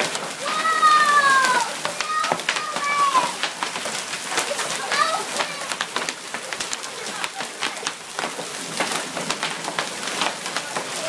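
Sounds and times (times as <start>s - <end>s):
hailstones pelting a pool: 0.0s - 11.0s.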